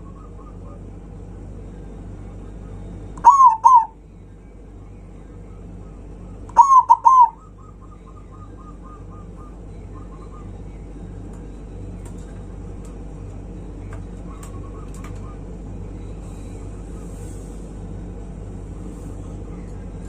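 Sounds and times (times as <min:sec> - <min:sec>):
dove cooing: 0:00.0 - 0:01.2, 0:02.6 - 0:04.0, 0:05.6 - 0:17.2
steady low hum: 0:00.0 - 0:20.0.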